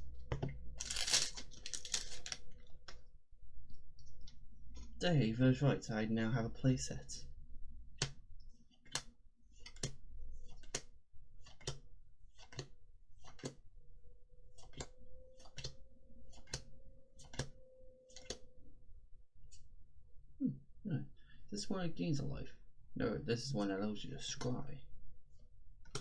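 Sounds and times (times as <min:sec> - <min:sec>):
cards sliding and snapping: 0:00.8 - 0:02.4.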